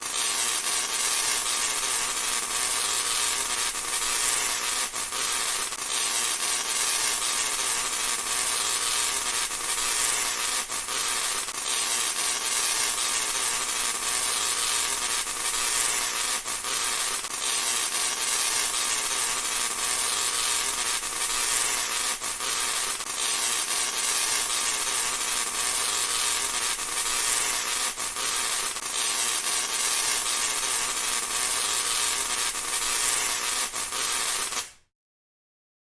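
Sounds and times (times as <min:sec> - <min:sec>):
tesla coil crackling buzz: 0:00.0 - 0:34.6
sharp electric snaps: 0:00.0 - 0:34.8.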